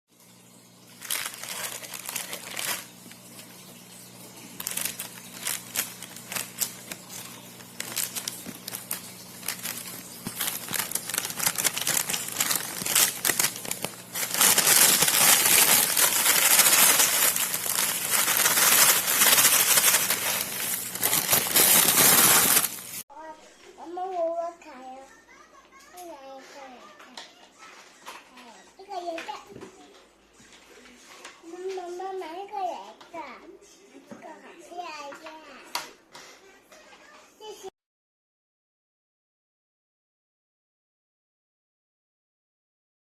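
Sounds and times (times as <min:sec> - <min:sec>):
plastic packaging crinkling: 0:00.9 - 0:23.0.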